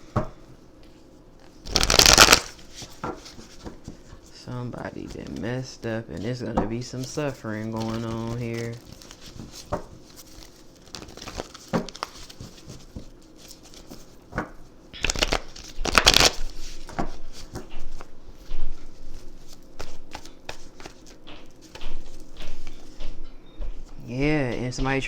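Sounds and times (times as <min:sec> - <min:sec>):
cards snapping and clicking: 0:01.7 - 0:02.6, 0:15.0 - 0:16.4
paper-like rustling: 0:01.7 - 0:04.2, 0:07.0 - 0:14.4.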